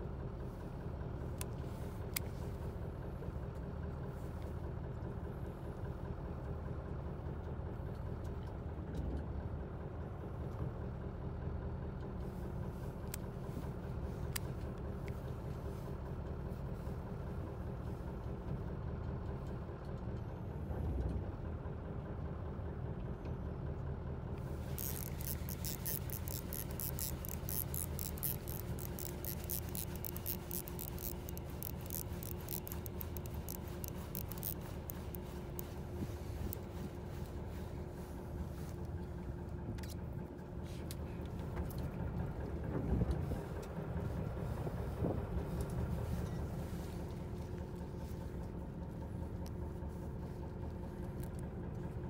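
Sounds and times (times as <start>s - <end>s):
boat engine humming: 0.0s - 52.0s
fast high ticking rattle: 24.6s - 37.2s.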